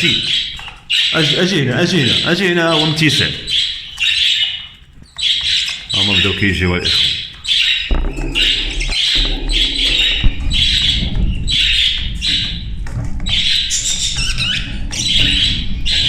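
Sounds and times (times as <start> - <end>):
cage birds calling: 0.0 - 16.0
low rumble: 7.9 - 16.0.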